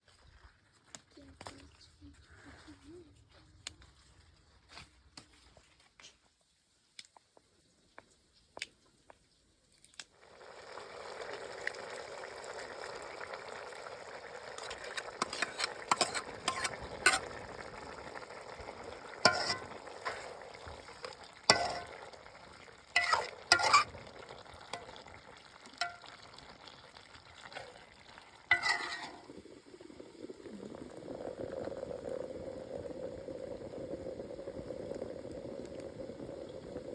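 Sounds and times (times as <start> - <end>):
food sizzling in a pan: 10.2 - 36.9
low bubbling: 10.2 - 36.9
utensil scraping a pan: 14.6 - 17.4, 19.2 - 22.2, 22.9 - 24.1, 28.5 - 29.3.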